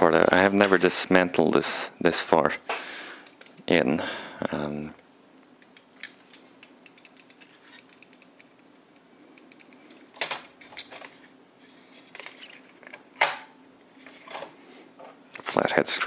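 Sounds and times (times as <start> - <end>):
tools and plastic parts clicking: 5.6 - 8.8, 9.4 - 11.3.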